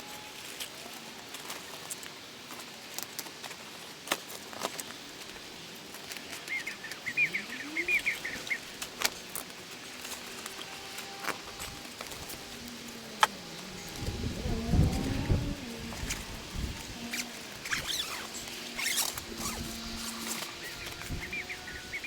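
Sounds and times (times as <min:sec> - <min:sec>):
bird chirping: 0:06.5 - 0:08.7, 0:12.3 - 0:22.0
tent poles and pegs clicking: 0:08.1 - 0:21.2.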